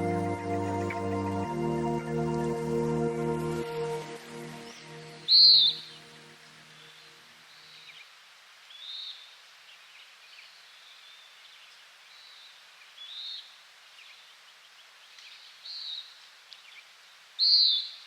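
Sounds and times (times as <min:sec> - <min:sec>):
light outdoor hiss: 0:00.0 - 0:18.0
faint wild bird calls: 0:05.3 - 0:18.0.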